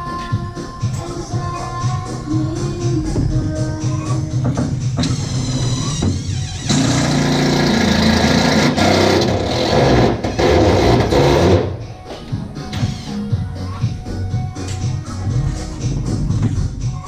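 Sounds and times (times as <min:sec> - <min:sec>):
motor-driven machine whining: 0:05.0 - 0:11.2.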